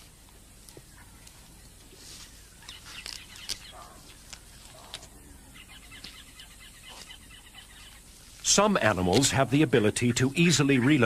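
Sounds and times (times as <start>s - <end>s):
faint bird chirps: 0.8s - 8.2s.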